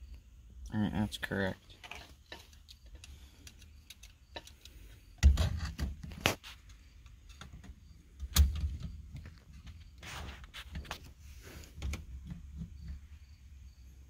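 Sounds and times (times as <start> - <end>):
metallic clicks and knocks: 1.6 - 9.8.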